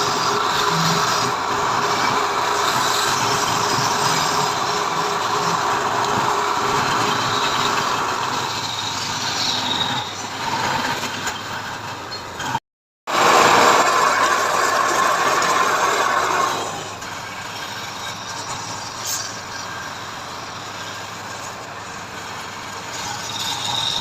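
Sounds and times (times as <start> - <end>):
woodworking power tool running: 13.1 - 17.0.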